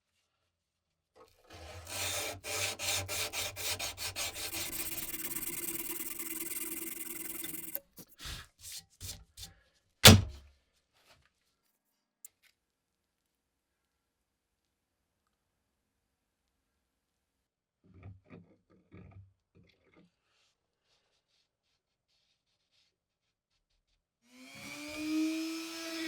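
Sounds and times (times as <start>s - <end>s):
abrasive rubbing on wood: 1.9s - 7.8s
loud knock: 10.0s - 10.4s.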